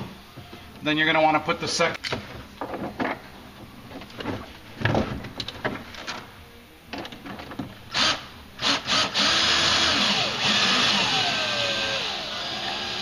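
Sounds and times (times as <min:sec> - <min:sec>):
power drill driving screw: 0:07.9 - 0:13.0.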